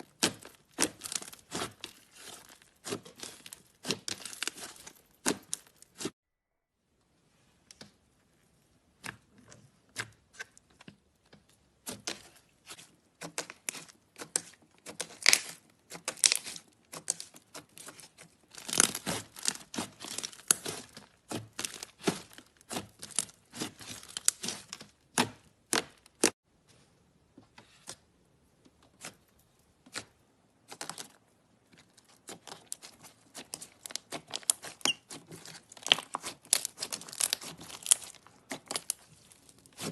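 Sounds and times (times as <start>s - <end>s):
slime crackling and popping: 0.0s - 6.1s, 13.2s - 26.4s, 32.0s - 39.9s.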